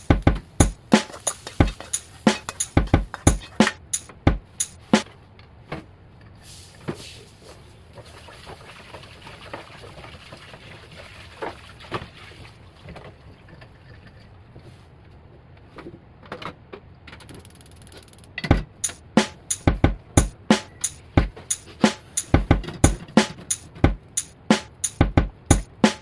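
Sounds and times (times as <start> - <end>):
drum beat: 0.0 - 5.0, 18.5 - 26.0
utensil knocking against pan: 0.2 - 5.0.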